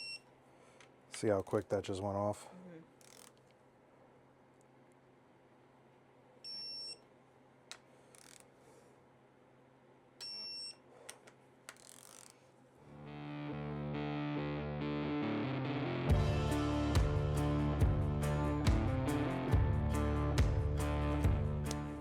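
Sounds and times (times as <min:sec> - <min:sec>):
music: 0:12.9 - 0:22.0.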